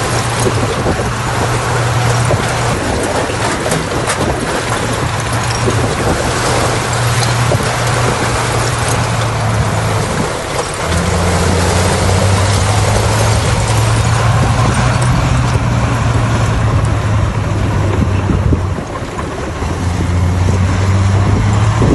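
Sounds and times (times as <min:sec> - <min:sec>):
bulldozer diesel engine under load: 0:00.0 - 0:21.9
steady rushing noise: 0:00.0 - 0:21.9.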